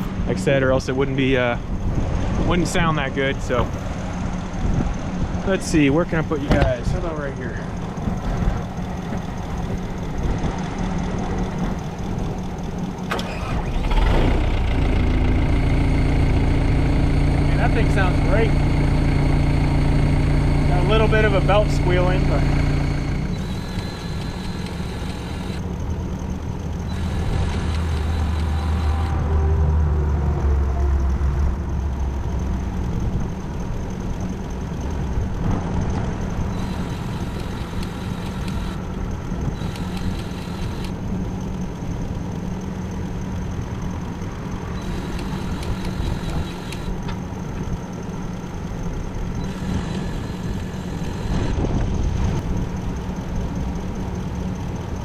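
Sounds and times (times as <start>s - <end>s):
diesel wood chipper running: 7.6s - 29.3s, 32.0s - 43.2s, 44.5s - 54.2s
belt squeal: 20.5s - 25.6s, 44.8s - 47.0s.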